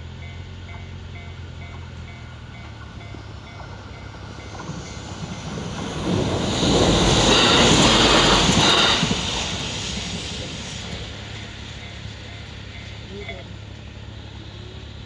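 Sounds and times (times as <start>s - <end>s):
train passing: 0.0s - 15.0s
level crossing warning bell: 11.8s - 13.7s.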